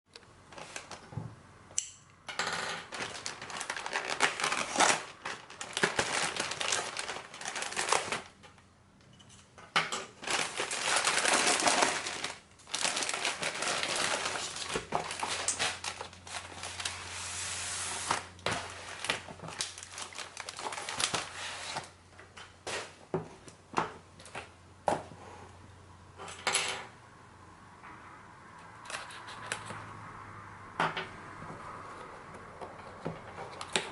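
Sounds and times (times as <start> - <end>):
cardboard packaging rustling: 0.5 - 1.1, 2.8 - 8.4, 10.1 - 22.0.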